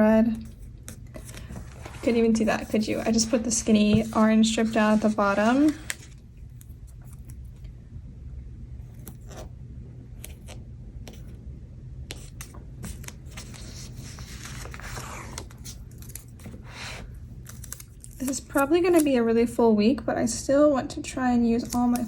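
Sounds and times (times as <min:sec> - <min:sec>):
paper stickers peeled and pressed: 0:17.4 - 0:19.1.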